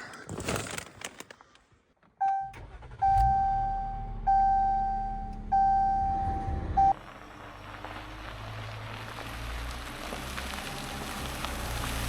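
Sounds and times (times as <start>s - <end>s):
car warning chime: 2.2s - 7.0s
low vehicle rumble: 2.6s - 12.0s.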